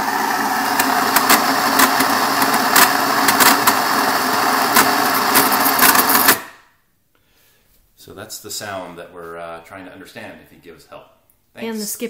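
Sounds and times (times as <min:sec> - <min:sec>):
coffee grinder motor whirring: 0:00.0 - 0:06.5.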